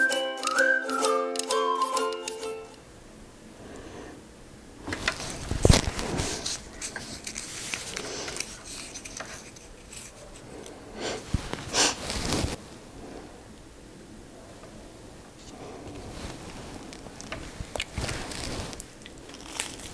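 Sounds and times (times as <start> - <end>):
short rustling bursts: 4.8 - 12.8, 15.8 - 19.9.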